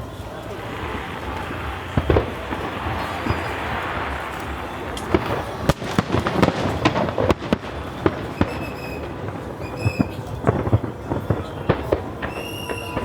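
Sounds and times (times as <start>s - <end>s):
fireworks bangs and crackles: 0.0s - 13.0s
high-pitched whistling tones: 8.3s - 10.3s, 12.2s - 13.0s.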